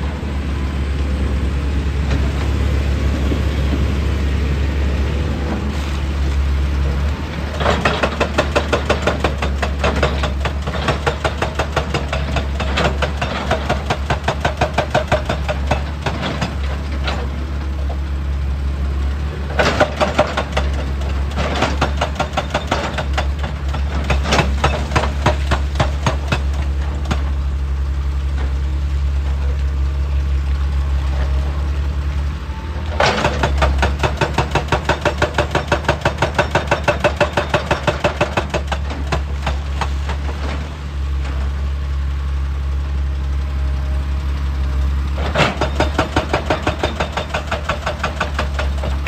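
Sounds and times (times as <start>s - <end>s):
diesel engine drone: 0.0s - 49.0s
hydraulic rock breaker hammering: 7.5s - 17.3s, 19.5s - 27.4s, 33.0s - 40.4s, 45.2s - 49.0s.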